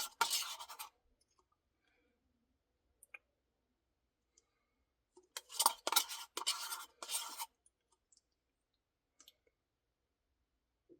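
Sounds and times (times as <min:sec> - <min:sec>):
spoon scraping inside cup: 0:00.0 - 0:00.9, 0:05.4 - 0:07.5.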